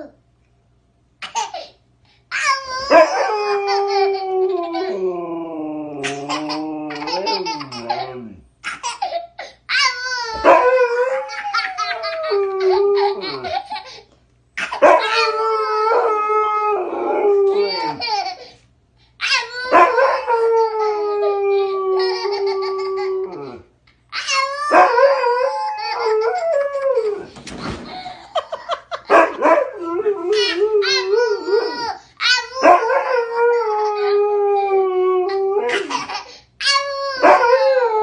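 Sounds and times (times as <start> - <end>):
dog howling: 2.8 - 8.4, 10.2 - 13.7, 14.8 - 18.2, 19.4 - 23.7, 24.6 - 27.3, 37.2 - 38.0
child's voice and laughter: 6.0 - 9.9.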